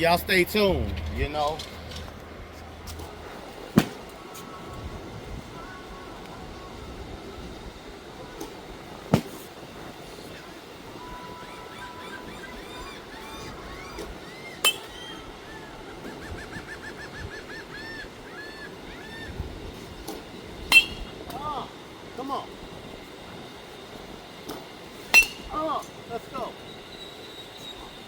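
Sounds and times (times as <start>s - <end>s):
birds chirping: 10.3s - 21.2s.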